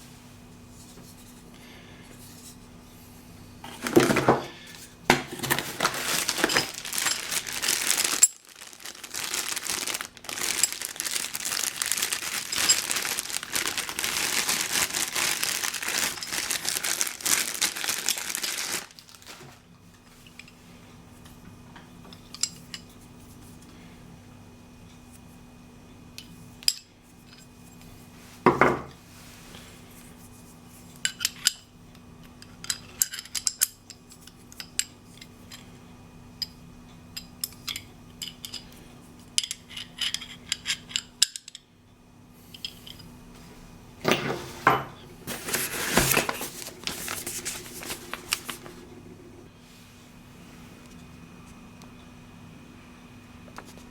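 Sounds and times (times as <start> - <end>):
steady faint hum: 0.0 - 53.9
packaging rustling and scraping: 3.6 - 19.7, 44.1 - 48.9.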